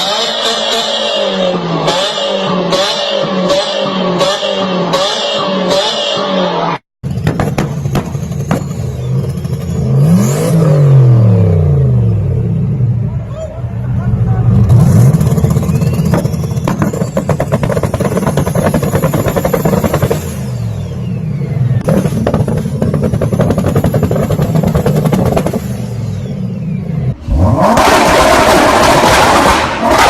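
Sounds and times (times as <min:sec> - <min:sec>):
turbocharged engine revving: 0:00.0 - 0:12.8, 0:14.4 - 0:20.8, 0:21.8 - 0:30.0
exhaust pops and crackles: 0:07.1 - 0:09.6, 0:15.1 - 0:20.2, 0:21.8 - 0:25.7
turbo whistle: 0:15.4 - 0:17.2
loud rushing noise: 0:27.5 - 0:30.0.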